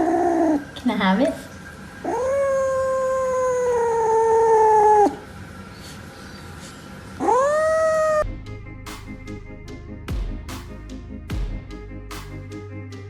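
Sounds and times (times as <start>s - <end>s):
animal howling: 0.0s - 0.8s, 1.9s - 8.2s.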